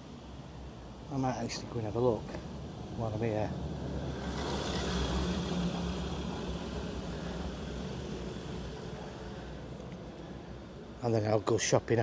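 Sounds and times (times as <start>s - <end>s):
road vehicle passing: 2.2s - 10.5s.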